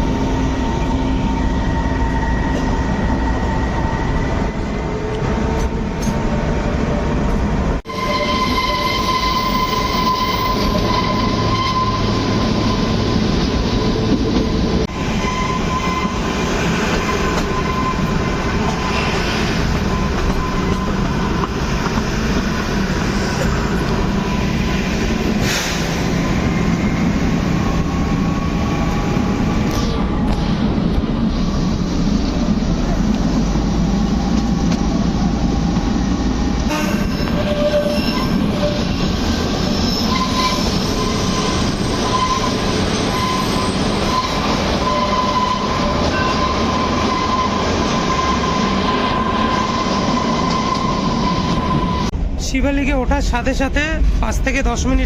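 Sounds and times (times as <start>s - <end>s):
train wheels rumbling on rails: 0.0s - 55.0s
high wheel squeal: 7.9s - 13.3s, 15.0s - 30.0s, 36.7s - 52.1s.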